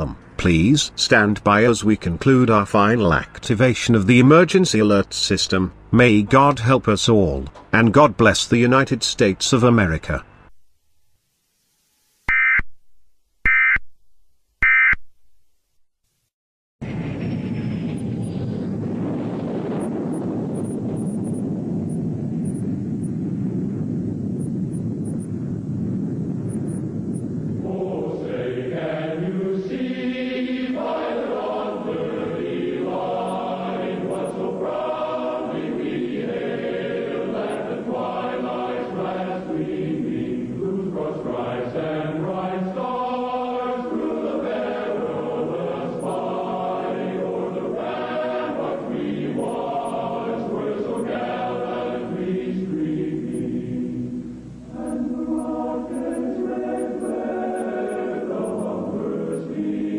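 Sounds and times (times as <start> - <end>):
choir singing long notes: 27.4 - 59.9.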